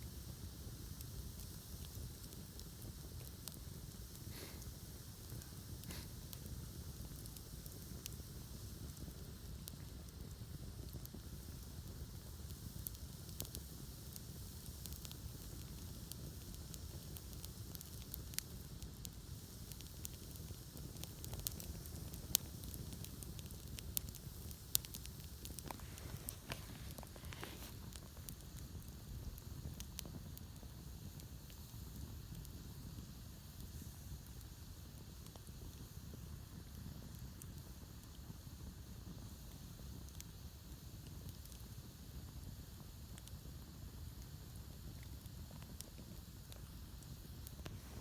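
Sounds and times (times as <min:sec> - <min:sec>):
campfire crackling and popping: 0:00.0 - 0:48.0.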